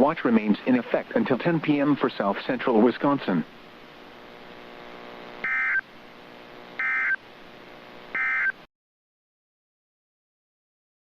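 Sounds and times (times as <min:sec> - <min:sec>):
faint steady hum: 0:00.0 - 0:08.7
warbling digital data bursts: 0:05.4 - 0:05.8, 0:06.8 - 0:07.2, 0:08.1 - 0:08.5.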